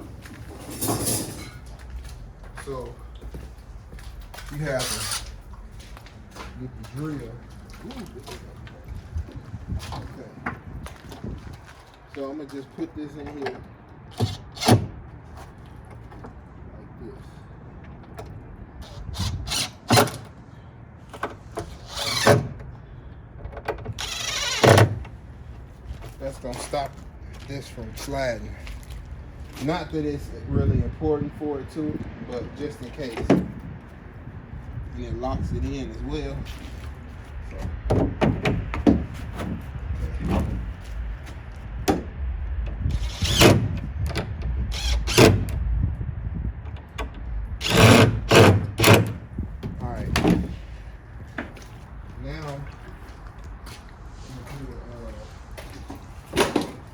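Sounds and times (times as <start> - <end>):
wood scraping: 0.0 - 12.1, 21.2 - 22.6, 47.6 - 56.9.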